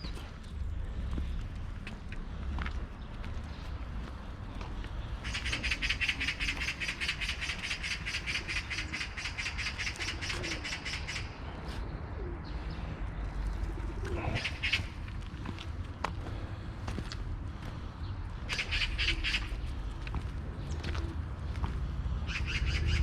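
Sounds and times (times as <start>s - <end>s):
magpie rattling chatter: 5.2s - 11.4s, 18.5s - 19.6s.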